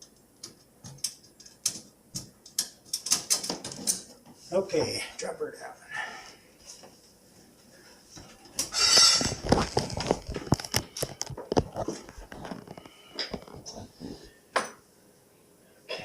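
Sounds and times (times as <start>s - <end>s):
dishwasher scraping: 8.7s - 9.7s.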